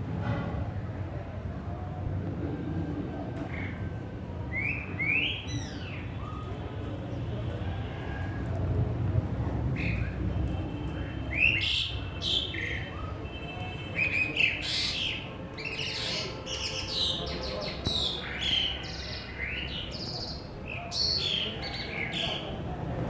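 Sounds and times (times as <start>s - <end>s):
starling singing: 13.8s - 22.4s.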